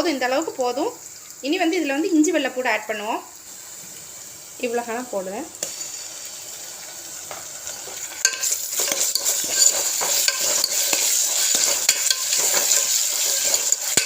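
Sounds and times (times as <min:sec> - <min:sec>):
onions sizzling in oil: 0:00.0 - 0:14.0
spoon scraping pot: 0:07.9 - 0:14.0.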